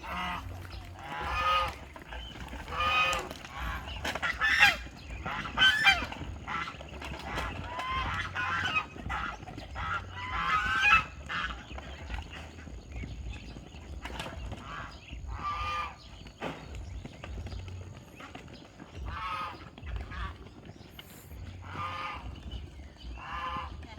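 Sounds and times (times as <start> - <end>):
geese honking: 0.0 - 23.9
low rumble: 0.0 - 23.9.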